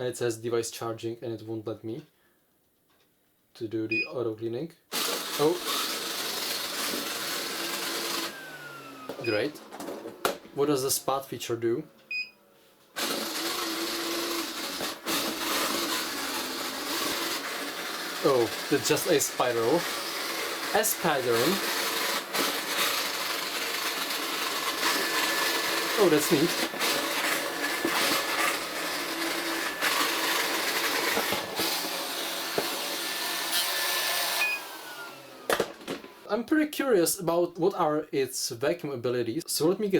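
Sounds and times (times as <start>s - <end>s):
vacuum suction fan and motors humming: 5.0s - 9.7s, 13.0s - 36.2s
robot vacuum beep: 9.2s - 9.5s, 34.4s - 35.1s.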